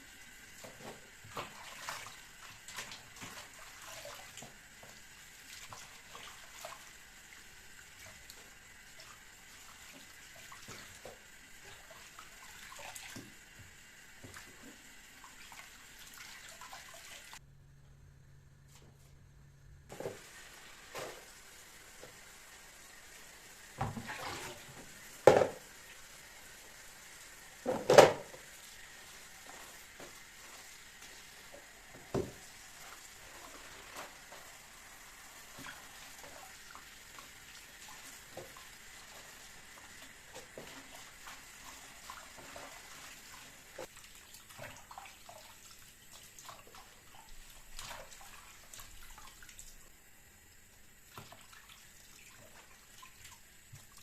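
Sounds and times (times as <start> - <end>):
tap water running into sink: 0.0 - 17.4, 19.9 - 49.8
dishes knocking: 25.3 - 25.6.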